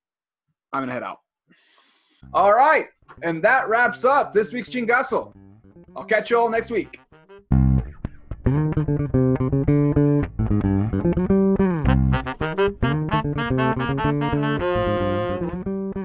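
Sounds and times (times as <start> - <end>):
plucked guitar and bass music: 2.2 - 16.0.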